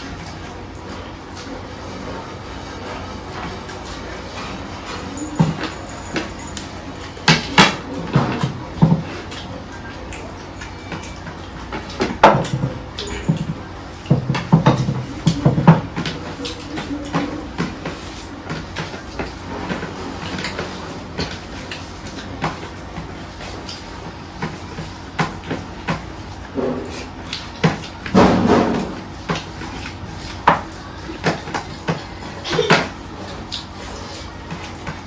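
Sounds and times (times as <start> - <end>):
plate and utensils clinking: 4.8 - 7.9.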